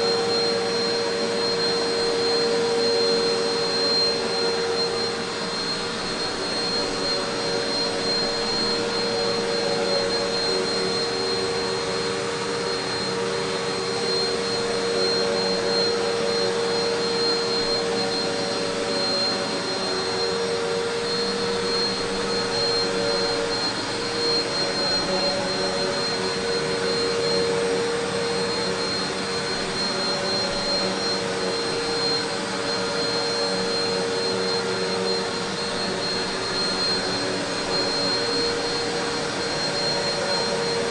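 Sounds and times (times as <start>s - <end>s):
high steady whine: 0.0s - 40.9s
vacuum cleaner running: 0.0s - 40.9s.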